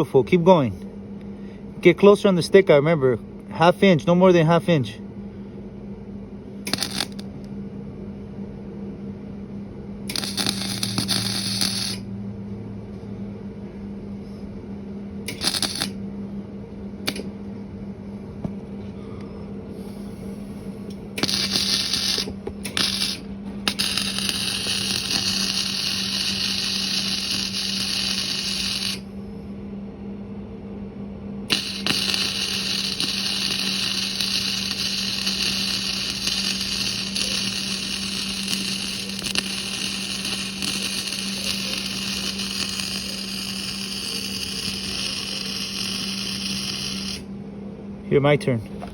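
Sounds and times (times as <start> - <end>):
steady low hum: 0.0 - 48.9
welding arc crackling: 6.7 - 7.4, 10.1 - 12.1, 15.3 - 16.0, 17.1 - 17.3, 20.9 - 29.0, 31.5 - 47.3.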